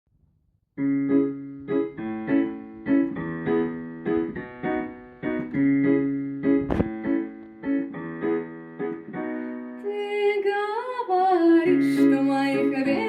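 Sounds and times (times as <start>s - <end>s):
piano playing: 0.8s - 13.0s
short sharp click: 6.6s - 7.0s.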